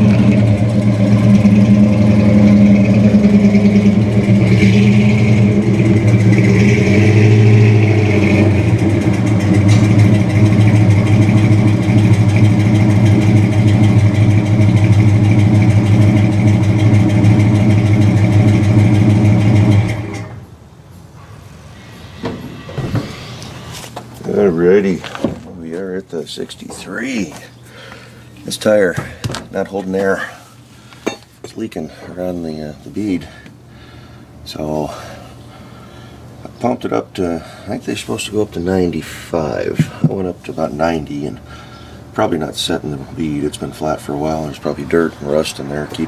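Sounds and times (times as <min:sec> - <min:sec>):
vehicle engine running: 0:00.0 - 0:20.5, 0:31.7 - 0:46.0.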